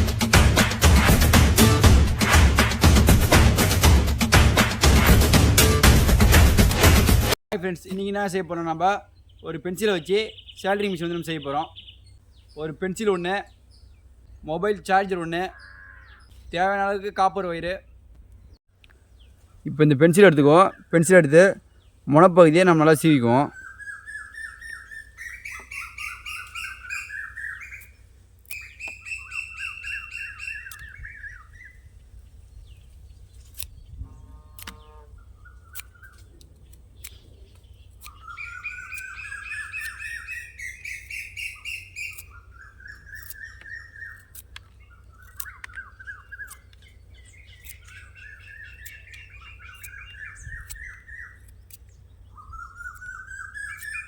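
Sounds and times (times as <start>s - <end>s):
birds chirping in trills: 7.6s - 54.0s
faint clicks: 34.6s - 34.8s.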